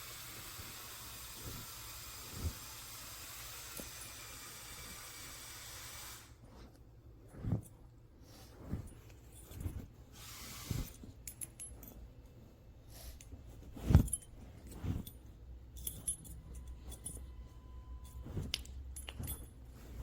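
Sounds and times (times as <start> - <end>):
soft thumps of movement: 6.4 - 20.0
dog collar tags jingling: 15.8 - 17.4.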